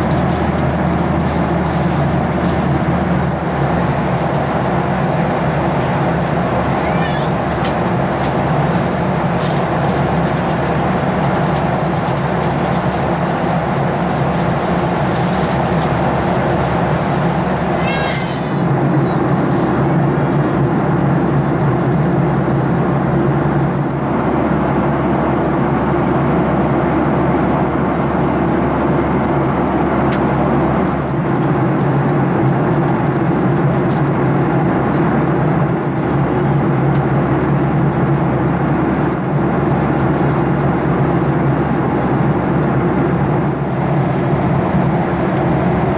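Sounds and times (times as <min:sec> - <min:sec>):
airplane engines droning: 0:00.0 - 0:45.9
constant low hum: 0:00.0 - 0:45.9
high-pitched rising squeak: 0:17.8 - 0:18.7.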